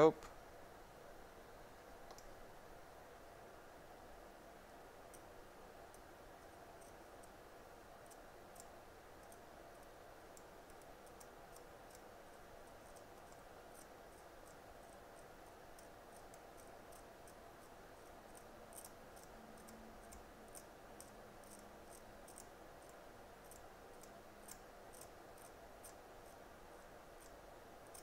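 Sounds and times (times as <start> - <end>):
low steady hum: 0.0 - 28.0
blade scraping clicks: 27.2 - 28.0.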